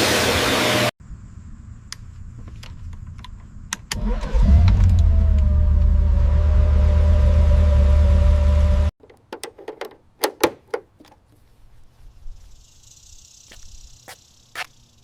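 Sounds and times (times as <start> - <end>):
sharp light clicks and knocks: 9.0 - 11.3.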